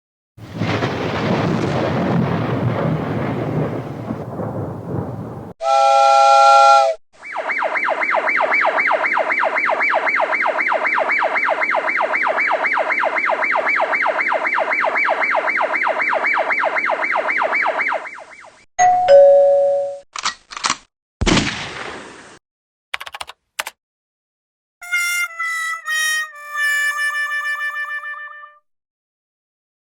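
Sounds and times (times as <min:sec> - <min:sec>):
pulsing electronic alarm tone: 0:05.6 - 0:18.6.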